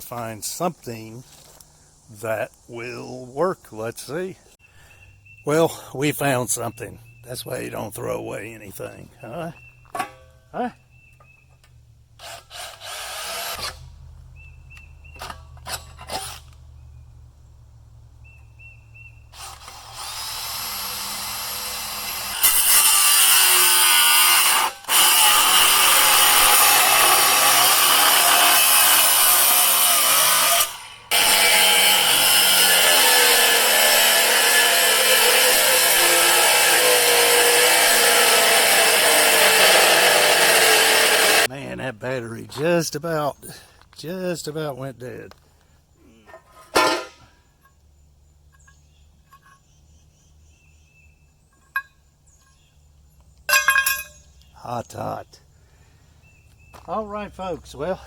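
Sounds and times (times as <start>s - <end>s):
power tool working metal: 12.2s - 13.8s, 19.3s - 41.5s.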